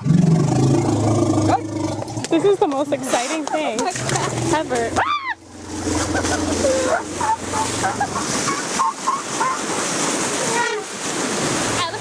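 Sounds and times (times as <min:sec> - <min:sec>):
elephant growling: 0:00.0 - 0:08.8.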